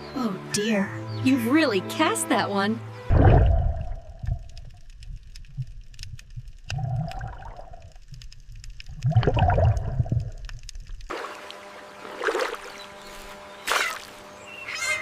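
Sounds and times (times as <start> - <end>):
water splashing and gurgling: 3.0 - 12.9.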